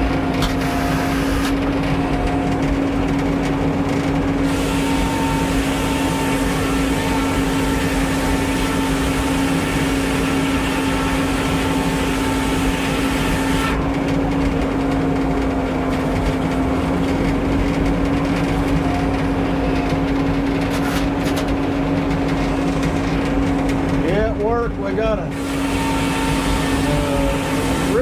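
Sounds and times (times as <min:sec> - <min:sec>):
engine running steadily: 0:00.0 - 0:28.0.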